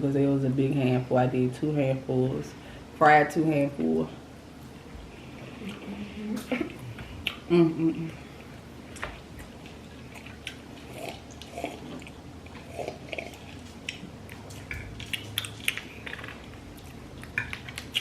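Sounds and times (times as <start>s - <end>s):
chewing crunchy fried food: 8.3s - 18.0s.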